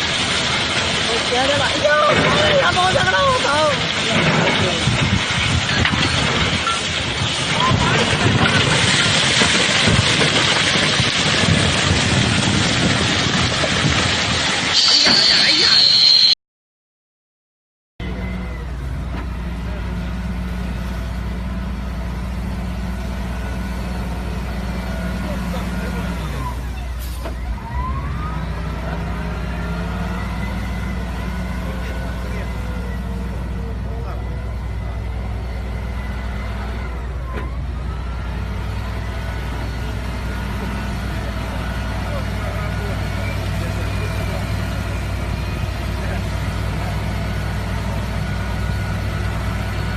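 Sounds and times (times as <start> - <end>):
machine engine rumbling: 0.0 - 16.4, 18.0 - 49.9
wind noise on microphone: 10.8 - 14.5
thin high whines: 14.7 - 16.4.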